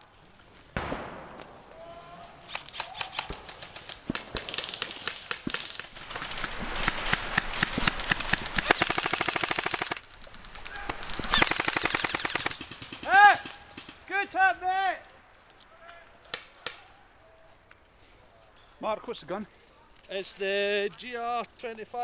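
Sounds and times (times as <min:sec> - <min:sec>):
airsoft guns firing: 0:05.9 - 0:14.1.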